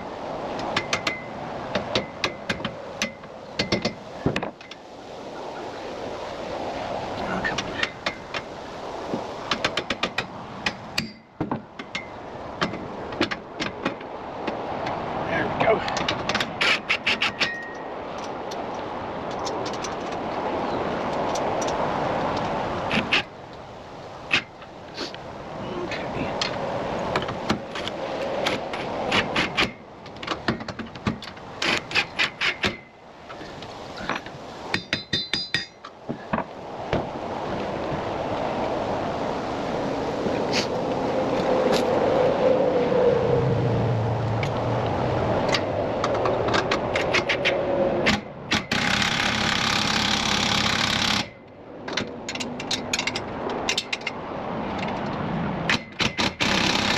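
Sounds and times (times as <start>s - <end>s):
hammering taps and knocks: 0.7s - 4.8s, 34.1s - 37.1s
hand tools knocking on metal: 34.0s - 35.8s
ringing metallic clinks: 34.8s - 35.8s.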